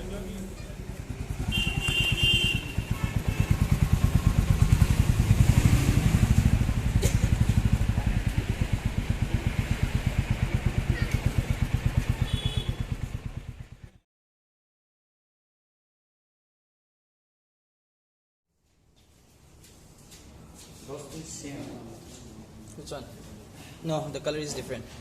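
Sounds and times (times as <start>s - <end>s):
motorcycle engine idling: 0.0s - 14.0s.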